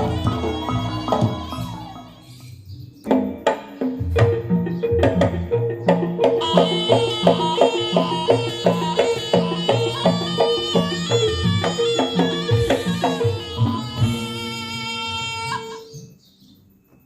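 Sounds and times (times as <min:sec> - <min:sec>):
repeating bass line: 0:00.0 - 0:02.3, 0:04.0 - 0:14.7
keyboard percussion beat: 0:00.0 - 0:15.8
reedy lead melody: 0:00.0 - 0:15.9.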